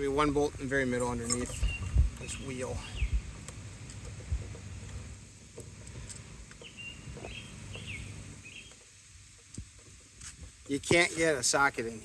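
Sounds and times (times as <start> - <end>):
low outdoor background noise: 0.0 - 12.0
small bird chirping: 0.8 - 3.4, 6.0 - 8.9.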